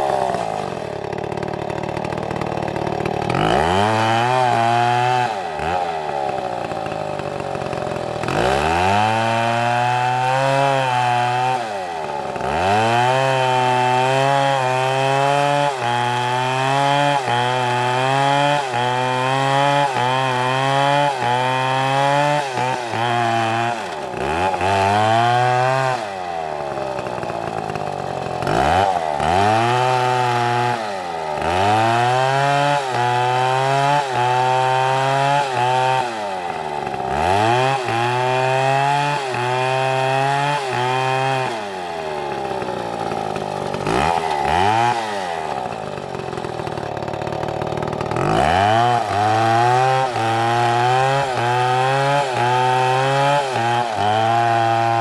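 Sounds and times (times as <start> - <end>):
chainsaw cutting log: 0.0 - 55.0.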